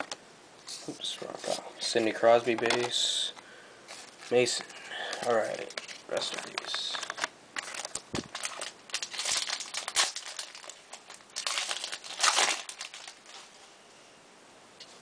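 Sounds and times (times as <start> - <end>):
cards rustling and clicking: 3.9 - 13.4
foil wrapper crinkling: 4.0 - 13.6.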